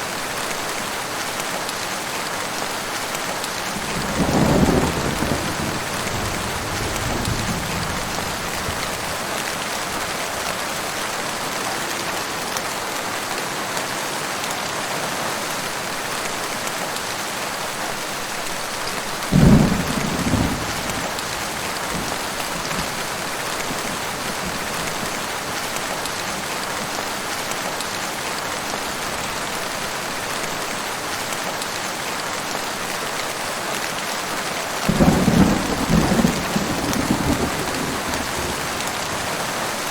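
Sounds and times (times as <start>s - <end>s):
heavy rain falling: 0.0s - 39.9s
thunder crack and rumble: 3.8s - 9.4s, 19.3s - 25.0s, 34.9s - 39.4s.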